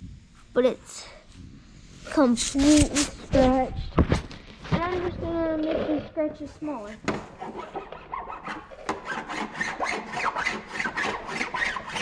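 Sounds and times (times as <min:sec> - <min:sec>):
hand file rasping: 0:07.3 - 0:12.0.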